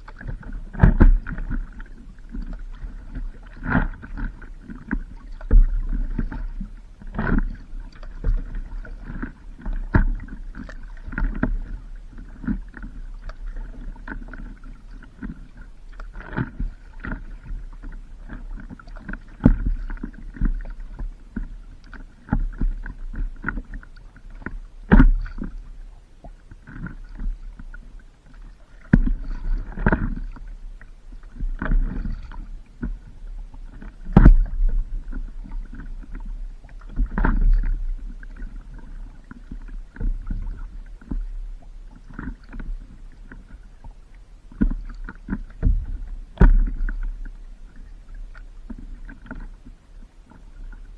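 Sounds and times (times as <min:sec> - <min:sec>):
continuous low rumble: 0:00.0 - 0:50.9
water splashing around paddleboard: 0:00.0 - 0:50.9.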